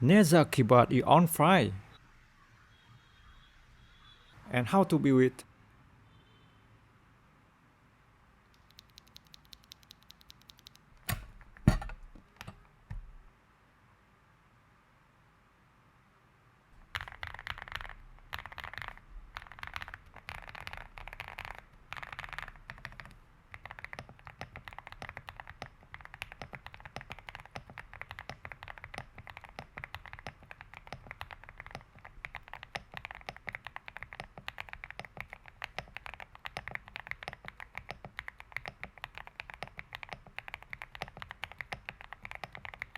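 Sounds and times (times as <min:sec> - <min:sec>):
keyboard key clicks typing: 0:08.5 - 0:13.1, 0:16.9 - 0:42.9.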